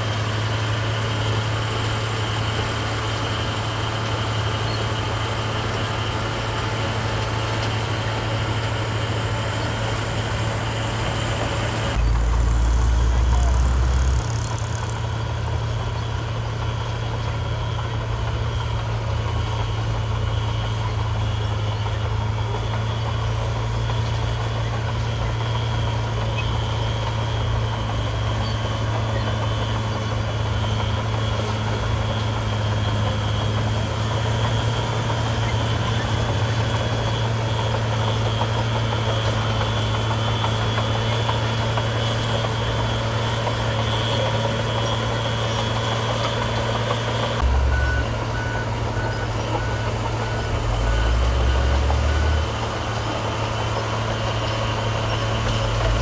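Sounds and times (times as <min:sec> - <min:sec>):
diesel engine humming: 0:00.0 - 0:56.0
loud low rumble: 0:11.9 - 0:16.0, 0:47.4 - 0:52.5.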